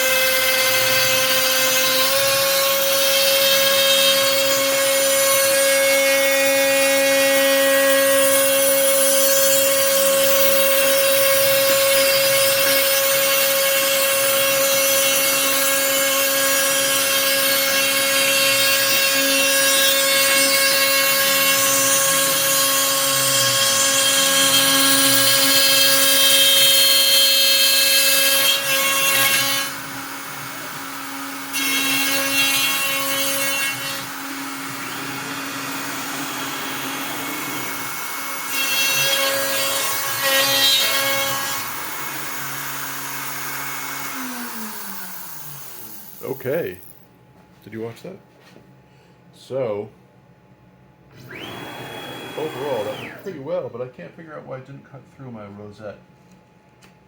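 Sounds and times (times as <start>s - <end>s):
router spindle whine: 51.1s - 53.3s.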